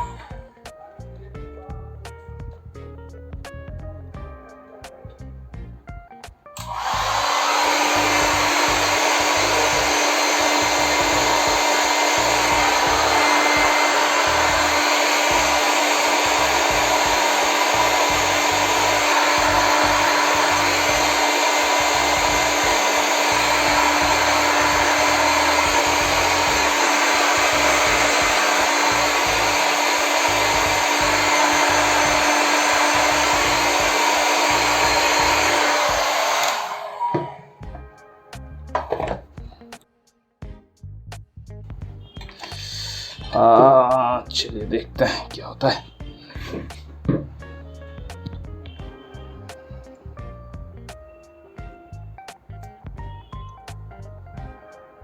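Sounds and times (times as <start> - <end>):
hair dryer blowing air: 0.0 - 0.4, 6.6 - 37.7, 42.3 - 44.2, 45.1 - 46.9.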